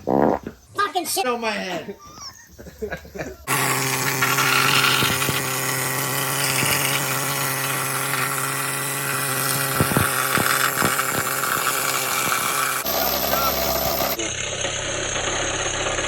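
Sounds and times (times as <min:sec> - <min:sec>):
power tool running: 0:03.4 - 0:16.0
sharp clicks: 0:09.4 - 0:14.2.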